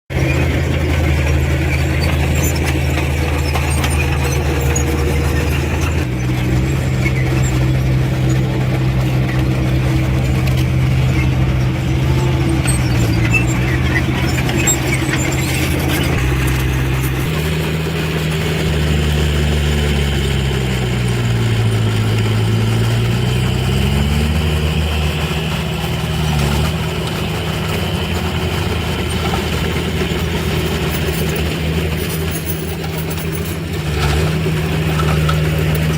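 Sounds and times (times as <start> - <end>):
heavy diesel engine under load: 0.1 - 35.9.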